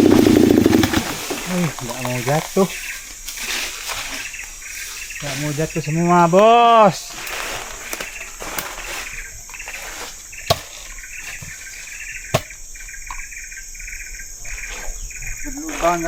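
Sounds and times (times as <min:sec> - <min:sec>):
insects chirping: 0:00.0 - 0:16.0
sharp knocks: 0:10.4 - 0:11.6, 0:12.3 - 0:13.2.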